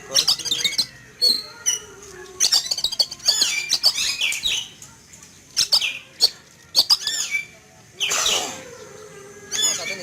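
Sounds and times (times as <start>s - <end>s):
bird chirping and whistling: 0.1s - 1.8s, 2.4s - 4.8s, 5.5s - 8.9s, 9.5s - 10.0s.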